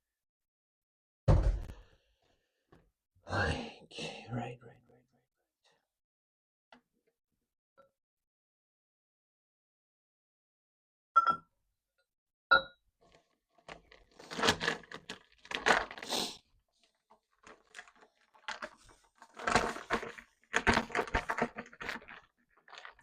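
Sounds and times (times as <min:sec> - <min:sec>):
rustling and crinkling: 0:13.0 - 0:23.0.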